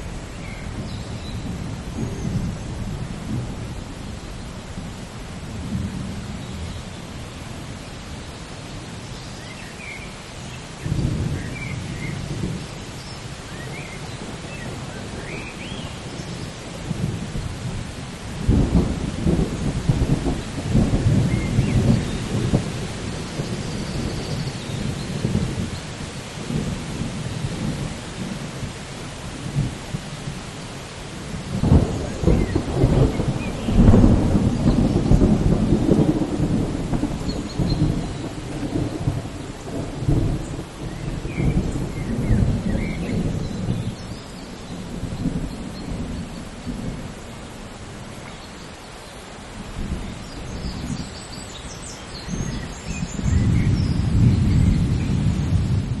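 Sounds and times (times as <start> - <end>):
steady rain: 0.0 - 56.0
thunder rumbling: 13.5 - 30.4, 31.1 - 48.2, 51.8 - 56.0.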